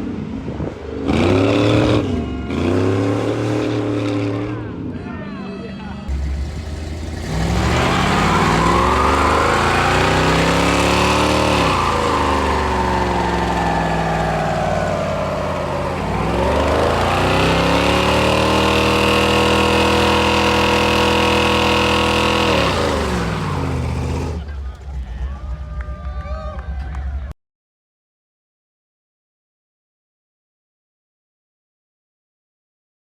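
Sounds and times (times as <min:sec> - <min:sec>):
van engine revving: 0:06.1 - 0:24.6.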